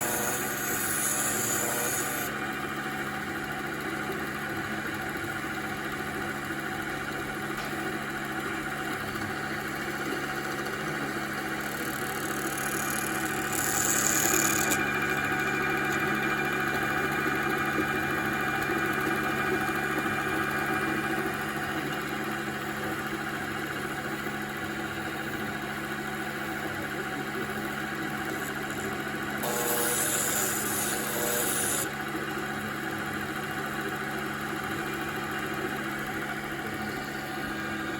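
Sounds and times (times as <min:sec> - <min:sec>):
tool cutting high hissing: 0:00.0 - 0:02.3, 0:12.1 - 0:16.0, 0:29.4 - 0:31.9
lathe motor hum and whine: 0:00.0 - 0:37.9.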